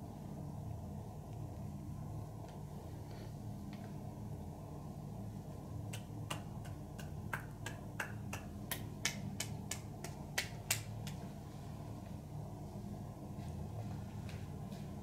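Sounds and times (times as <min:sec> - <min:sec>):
steady low hum: 0:00.0 - 0:15.0
finger snapping: 0:05.9 - 0:11.2.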